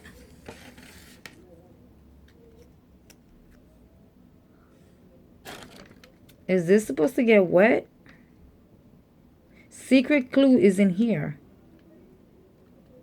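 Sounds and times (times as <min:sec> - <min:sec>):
low room hum: 0:00.0 - 0:13.0
plastic toy pieces rustling: 0:05.5 - 0:06.3.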